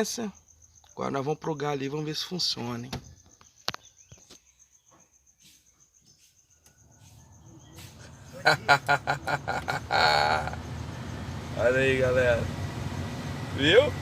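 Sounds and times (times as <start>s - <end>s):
blower fan whooshing air: 9.1s - 14.0s.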